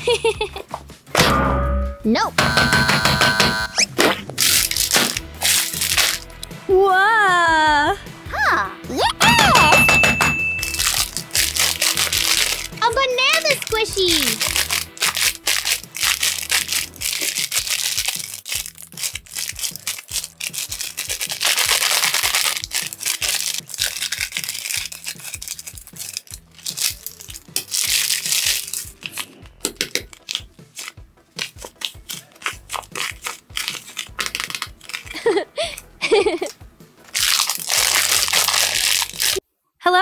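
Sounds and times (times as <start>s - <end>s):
background music with beat: 0.0s - 15.0s
paper crinkling and crushing: 4.2s - 6.6s, 10.6s - 39.4s.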